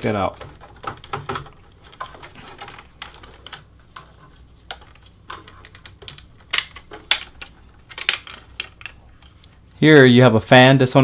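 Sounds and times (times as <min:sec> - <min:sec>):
hard drive and cables clicking: 0:00.1 - 0:09.8.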